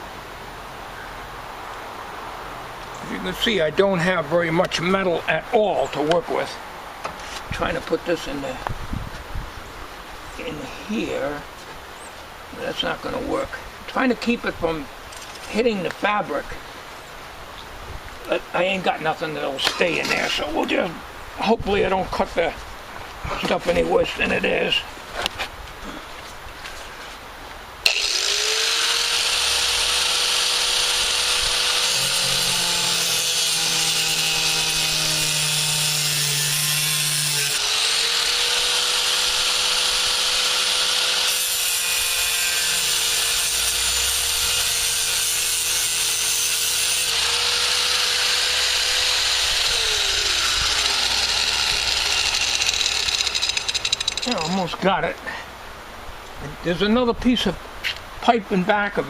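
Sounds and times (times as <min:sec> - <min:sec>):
angle grinder cutting metal: 0:27.8 - 0:54.7.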